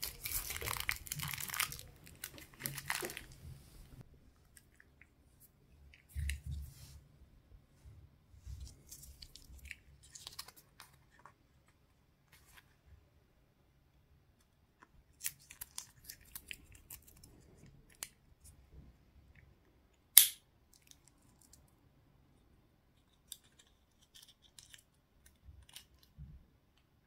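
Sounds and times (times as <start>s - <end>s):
plastic packaging clicks and crackles: 0.0s - 3.4s
loud sharp snap: 20.2s - 20.4s.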